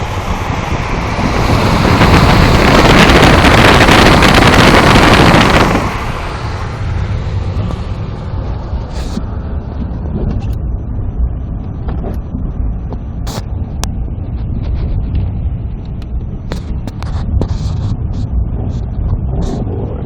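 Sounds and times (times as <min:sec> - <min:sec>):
car engine and tyres rumbling: 0:00.0 - 0:20.0.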